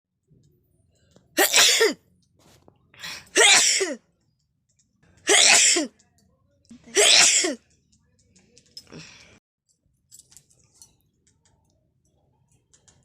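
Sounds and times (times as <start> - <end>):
person sneezing: 1.4 - 2.0, 3.3 - 4.0, 5.3 - 5.9, 6.9 - 7.6.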